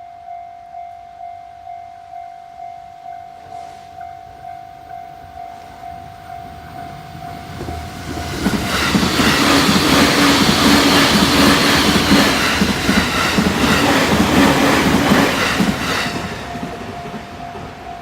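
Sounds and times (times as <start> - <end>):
train wheels clattering over rails: 6.2 - 18.0.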